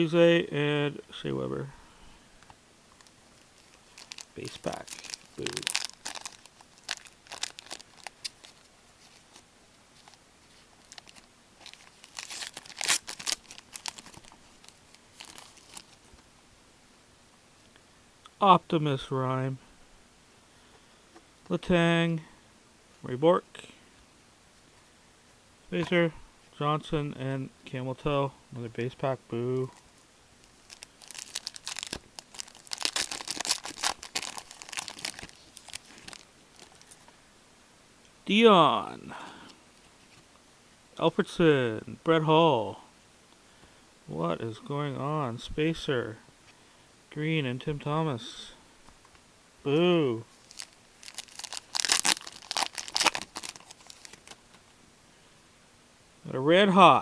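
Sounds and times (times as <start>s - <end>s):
card pack wrapper tearing and crinkling: 3.6s - 9.4s, 10.8s - 16.0s, 30.6s - 37.0s, 50.4s - 54.4s.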